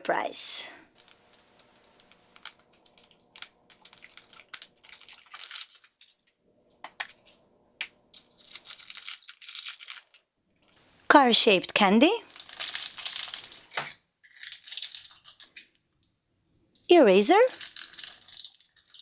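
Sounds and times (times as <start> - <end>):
wrapping tearing and crinkling: 0.9 - 6.3, 8.2 - 10.8, 12.2 - 15.6, 17.5 - 19.0.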